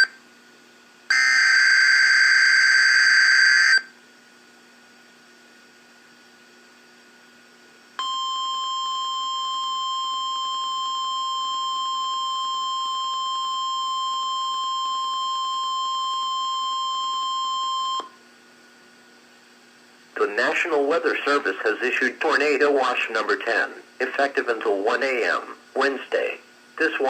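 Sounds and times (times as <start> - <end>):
high-pitched alarm tone: 1.1 - 3.8.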